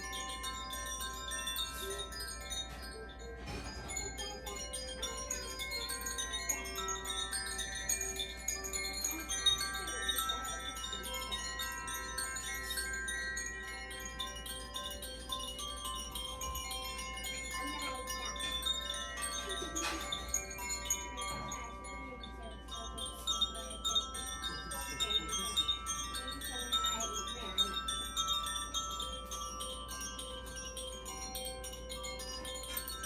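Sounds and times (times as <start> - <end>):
healing chimes ringing: 0.0 - 33.0.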